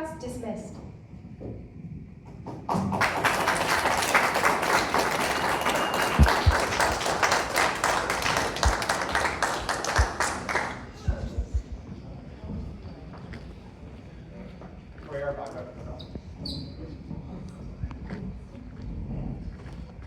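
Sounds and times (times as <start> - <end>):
audience applauding: 2.5 - 11.6.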